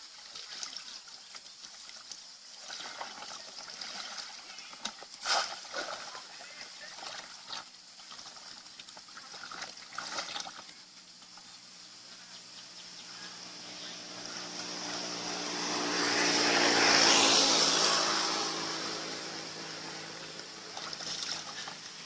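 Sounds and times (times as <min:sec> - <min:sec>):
motor engine passing by: 0:12.4 - 0:22.0.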